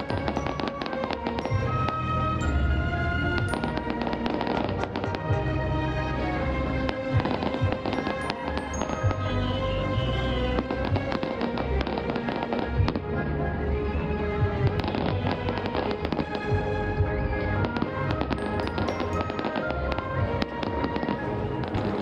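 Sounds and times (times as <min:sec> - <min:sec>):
fireworks bangs: 0:00.0 - 0:02.0, 0:03.4 - 0:05.5, 0:17.6 - 0:22.0
music: 0:00.0 - 0:22.0.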